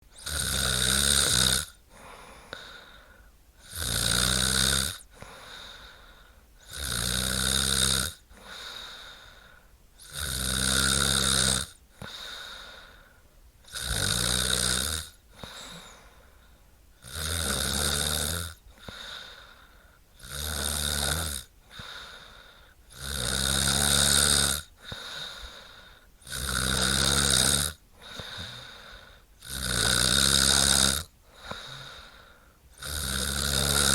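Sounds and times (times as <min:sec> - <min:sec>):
woman snoring: 0:00.1 - 0:03.0, 0:03.6 - 0:09.4, 0:10.0 - 0:13.0, 0:13.6 - 0:16.2, 0:17.0 - 0:33.9
quiet breathing: 0:01.8 - 0:03.8, 0:05.0 - 0:06.7, 0:08.2 - 0:10.1, 0:11.8 - 0:13.7, 0:15.1 - 0:20.3, 0:21.5 - 0:23.0, 0:24.6 - 0:26.9, 0:27.5 - 0:33.7.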